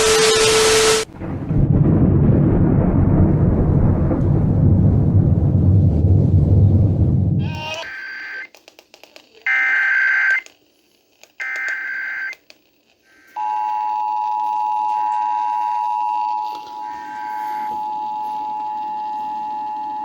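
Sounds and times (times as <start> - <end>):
buzzy digital header tones: 7.4 - 8.5, 11.4 - 12.4
two-tone attention signal: 13.4 - 20.0.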